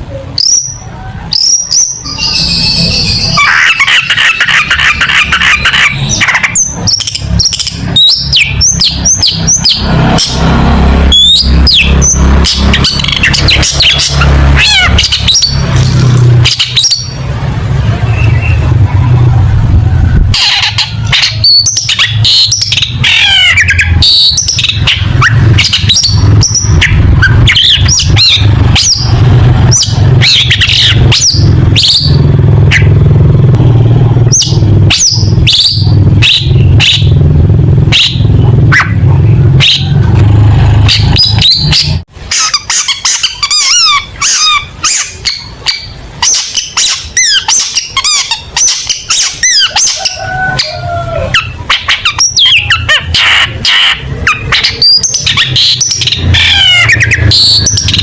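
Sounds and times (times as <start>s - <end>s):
bird singing chirps and squawks: 0.0s - 19.3s, 20.1s - 33.6s, 34.2s - 58.0s
loud low rumble: 0.0s - 42.3s.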